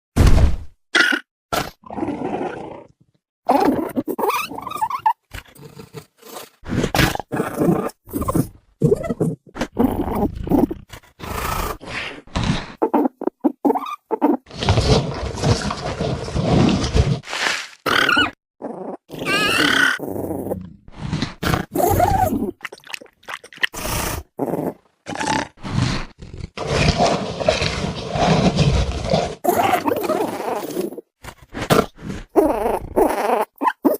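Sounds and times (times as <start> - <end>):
soft creature noises: 3.5 - 14.6, 17.3 - 26.9
dinosaur creature calls: 17.9 - 20.0
creature grunting and growling: 17.9 - 22.6, 29.0 - 33.6.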